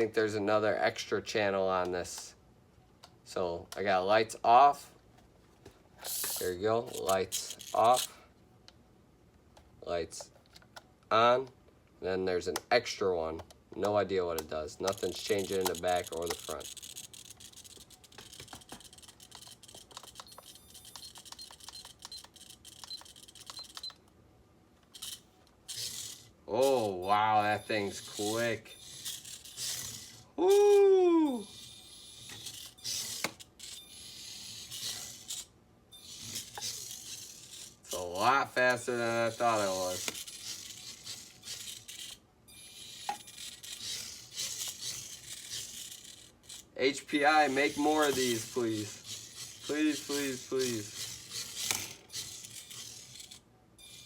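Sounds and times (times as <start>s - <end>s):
toy car motor whirring: 6.0s - 8.2s, 14.7s - 24.0s, 24.9s - 54.0s.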